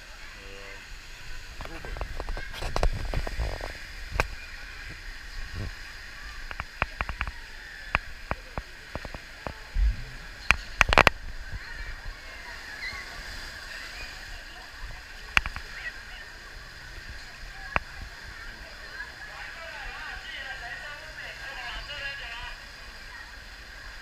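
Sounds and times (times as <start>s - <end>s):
running water: 0.0s - 24.0s
distant voices: 0.8s - 20.2s
water splashing: 0.9s - 19.8s.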